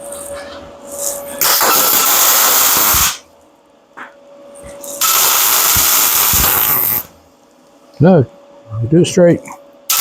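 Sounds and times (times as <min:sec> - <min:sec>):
welding arc crackling hiss: 0:00.9 - 0:03.3, 0:04.8 - 0:07.2.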